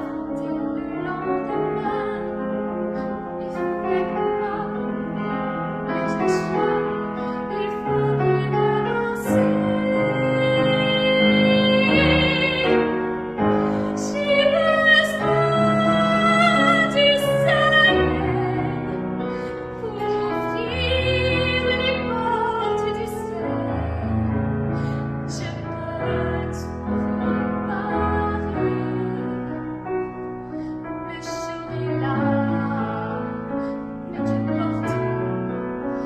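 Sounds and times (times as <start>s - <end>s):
piano accompaniment: 0.0s - 36.0s
woman singing slow song: 6.1s - 13.0s, 13.6s - 19.1s, 19.8s - 24.3s.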